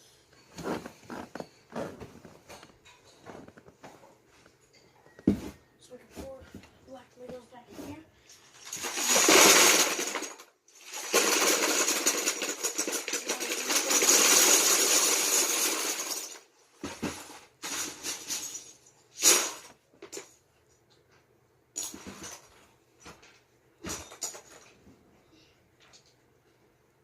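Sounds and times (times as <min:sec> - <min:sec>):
plastic bricks pouring into container: 0:08.5 - 0:16.5.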